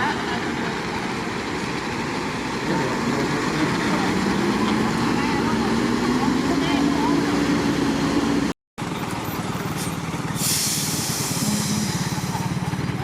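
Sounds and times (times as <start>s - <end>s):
diesel truck engine running: 0.0s - 13.0s
burst of hiss: 10.4s - 12.3s.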